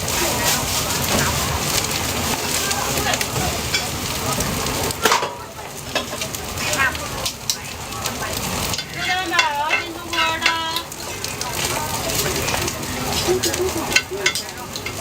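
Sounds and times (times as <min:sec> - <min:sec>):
food sizzling: 0:00.0 - 0:15.0
spatula scraping a pan: 0:08.7 - 0:10.9, 0:12.4 - 0:15.0.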